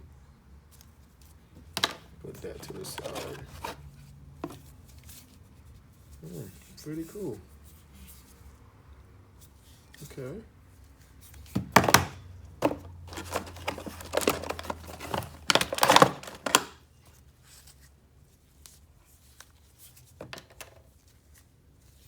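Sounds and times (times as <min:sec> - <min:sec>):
packaging crinkling and tearing: 0:13.1 - 0:16.8.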